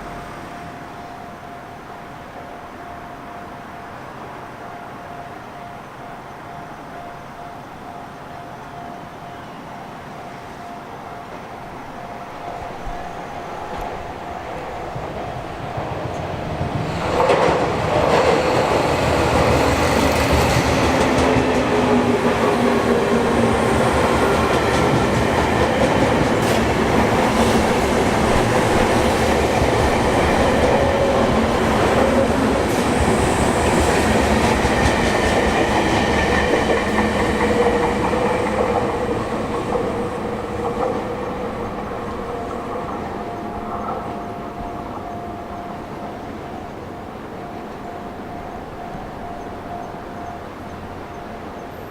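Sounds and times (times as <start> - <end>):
electric train passing: 0.0 - 51.9.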